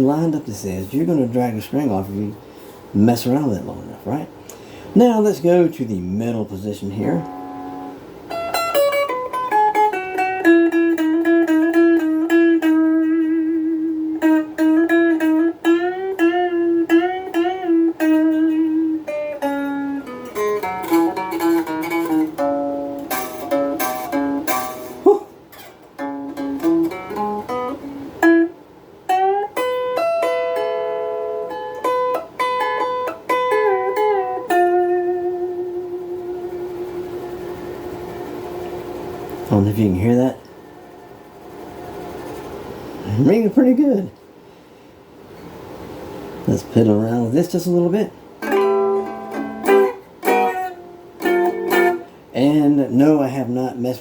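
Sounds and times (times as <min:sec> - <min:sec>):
clean electric guitar notes: 0:07.1 - 0:39.6, 0:48.4 - 0:52.3.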